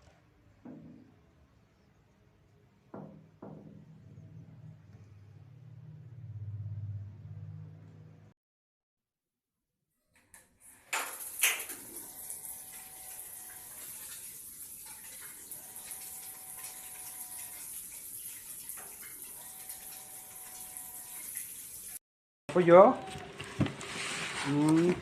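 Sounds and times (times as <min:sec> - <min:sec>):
sharp knocks: 0:02.9 - 0:03.9
water running from a tap: 0:10.7 - 0:22.0.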